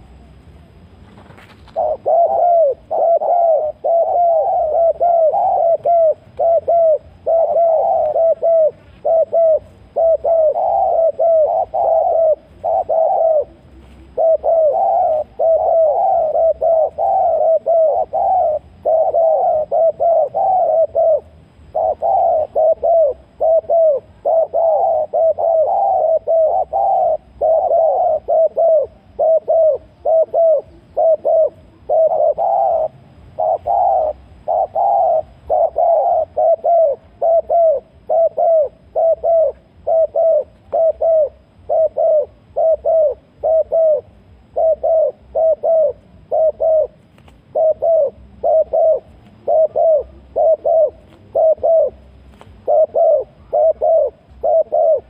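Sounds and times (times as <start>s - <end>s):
doves cooing: 1.1s - 55.0s.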